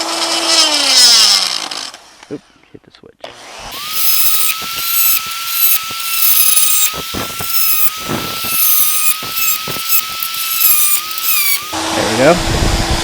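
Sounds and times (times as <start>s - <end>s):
rotary tool whining: 3.3s - 12.1s
bit grinding and scraping: 3.7s - 11.8s.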